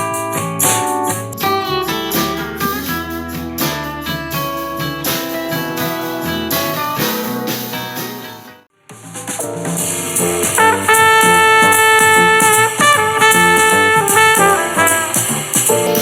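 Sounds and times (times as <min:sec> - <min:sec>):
steady bass line: 0:00.0 - 0:07.7, 0:09.4 - 0:16.0
blues guitar music: 0:00.0 - 0:08.6, 0:09.4 - 0:16.0
trumpet playing held notes: 0:10.2 - 0:16.0.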